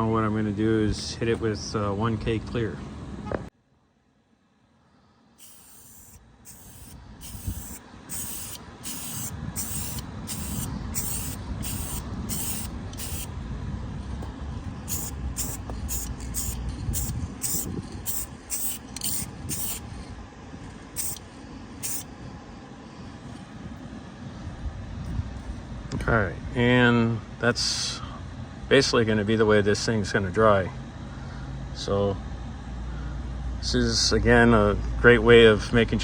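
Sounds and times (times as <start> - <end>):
aerosol can spraying bursts: 5.4 - 13.3, 14.9 - 19.8, 21.0 - 21.2, 21.8 - 22.0
steady low rumble: 5.4 - 27.4.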